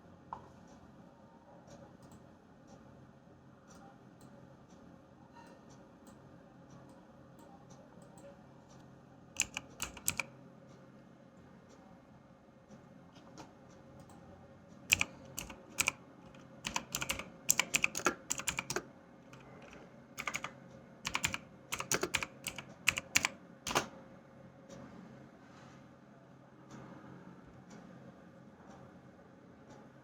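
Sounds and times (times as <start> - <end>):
sharp clicks and taps: 9.4 - 10.2, 14.9 - 18.8, 19.4 - 20.5, 21.1 - 23.9.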